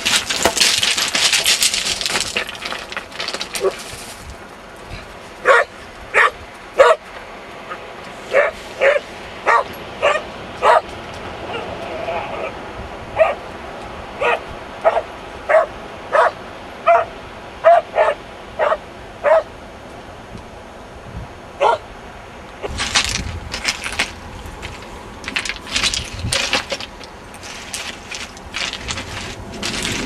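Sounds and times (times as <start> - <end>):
crunching scraping noises: 0.0 - 12.3, 22.6 - 30.0
dog barking: 5.4 - 7.0, 8.3 - 10.9, 13.2 - 13.4, 14.2 - 19.5, 21.6 - 21.8.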